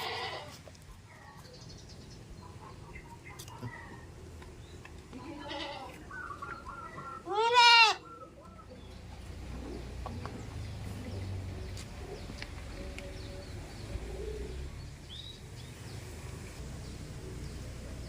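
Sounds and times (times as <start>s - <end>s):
goat bleating: 0.0s - 0.6s, 5.1s - 6.1s, 7.2s - 8.1s.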